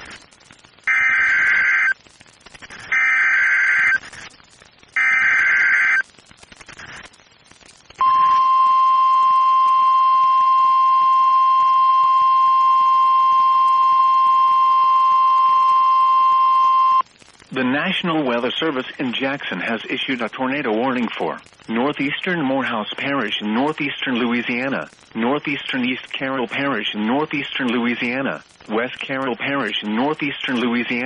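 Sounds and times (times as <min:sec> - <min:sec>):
warbling digital data tones: 0:08.0 - 0:17.0.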